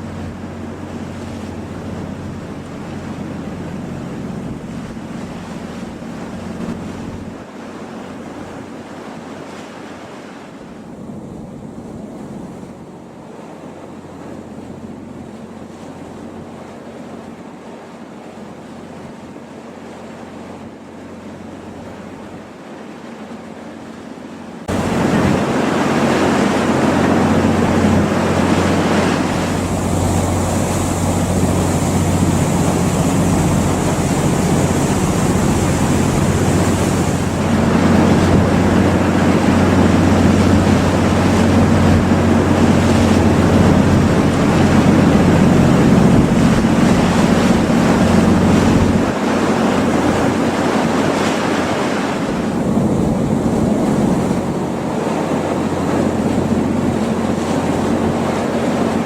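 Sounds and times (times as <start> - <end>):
waves rushing: 0.0 - 59.0
wind: 0.0 - 59.0
low even hum: 26.2 - 46.9.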